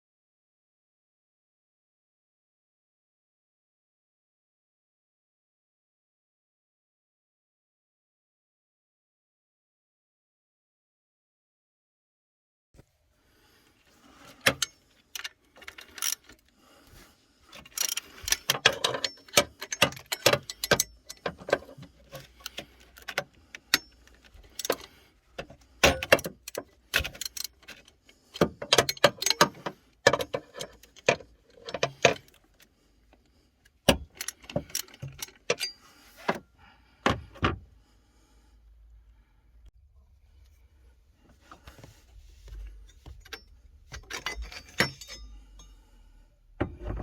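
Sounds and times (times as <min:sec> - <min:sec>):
metal tools clinking: 0:14.4 - 0:16.4, 0:17.6 - 0:32.4, 0:33.9 - 0:36.3, 0:42.6 - 0:46.0.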